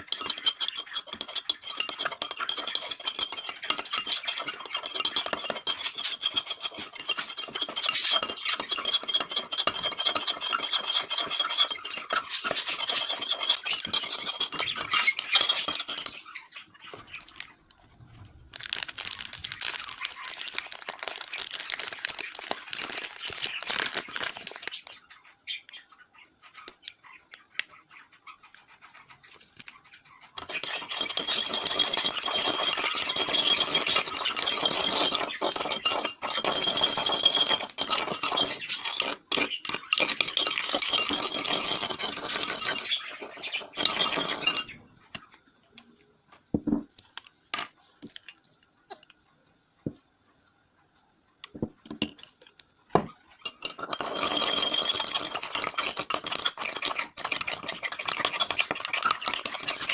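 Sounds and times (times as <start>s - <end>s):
clinks and taps: 0.0s - 16.2s, 29.6s - 50.2s, 51.4s - 59.9s
utensil stirring in container: 0.0s - 25.0s, 28.5s - 45.3s, 53.0s - 59.9s.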